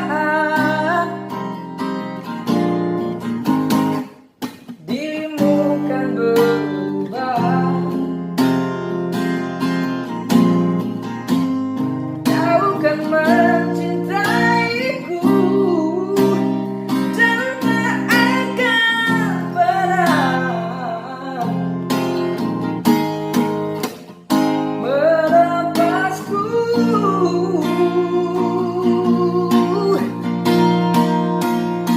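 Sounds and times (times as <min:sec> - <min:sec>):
person singing: 0:00.0 - 0:01.9, 0:04.7 - 0:08.4, 0:10.0 - 0:22.4, 0:24.7 - 0:31.9
strummed acoustic guitar: 0:00.0 - 0:31.9.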